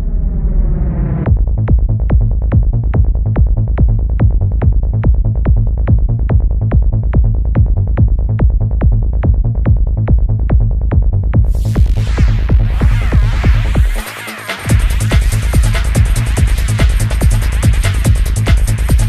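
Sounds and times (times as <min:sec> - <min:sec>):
electronic dance music: 0:11.4 - 0:19.0.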